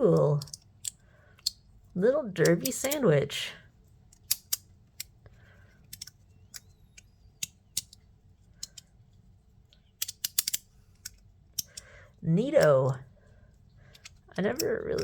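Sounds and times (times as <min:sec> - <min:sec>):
fidget slider clicks and clacks: 0:04.1 - 0:05.1, 0:05.9 - 0:08.0, 0:08.6 - 0:08.9, 0:10.0 - 0:11.8.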